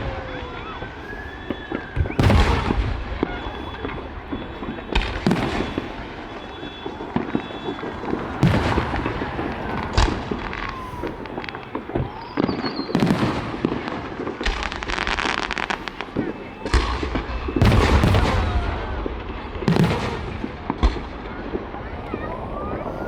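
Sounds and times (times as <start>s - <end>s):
whistling rising shells: 0.0s - 13.8s
firework bangs: 0.0s - 23.0s.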